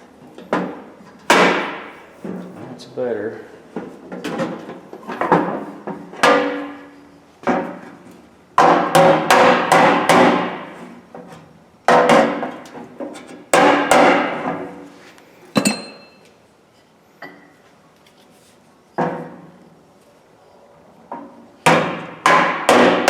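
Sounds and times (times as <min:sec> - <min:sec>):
hammer striking sheet steel: 0:01.3 - 0:02.0, 0:08.6 - 0:10.8, 0:13.6 - 0:14.5, 0:21.7 - 0:23.0.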